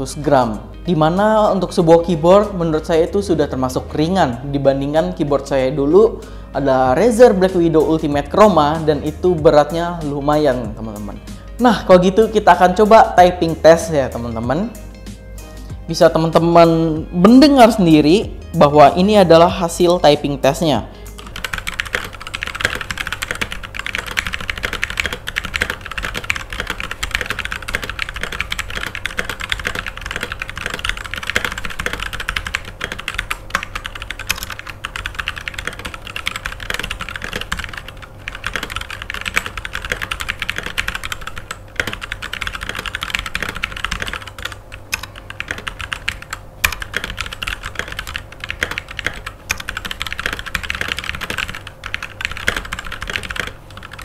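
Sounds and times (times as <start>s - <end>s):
fast typing on mechanical keyboard: 21.1s - 54.0s.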